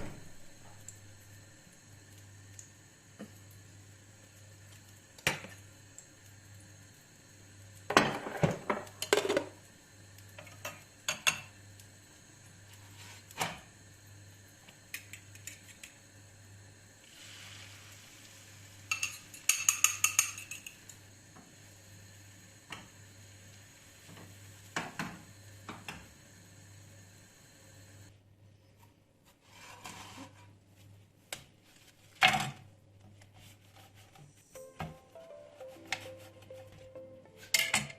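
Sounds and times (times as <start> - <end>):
utensils and dishes clinking: 18.9 - 20.9, 37.4 - 37.9.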